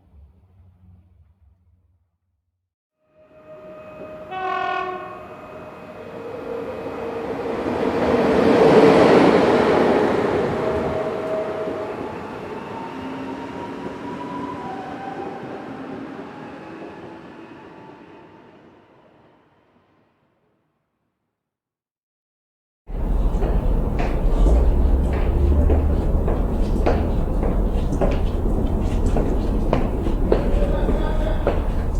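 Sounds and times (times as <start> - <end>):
train horn blast: 3.1 - 7.2
train rumbling past: 3.2 - 19.6, 22.9 - 31.9.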